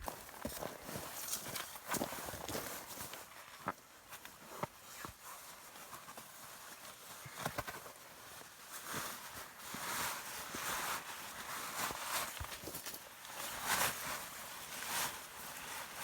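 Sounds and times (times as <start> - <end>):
rustling: 4.4 - 16.0.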